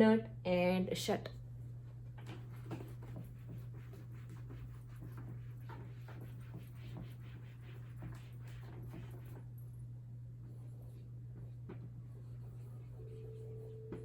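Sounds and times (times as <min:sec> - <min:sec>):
low electrical hum: 0:00.0 - 0:14.0
writing scratching strokes: 0:02.2 - 0:09.6, 0:10.4 - 0:14.0.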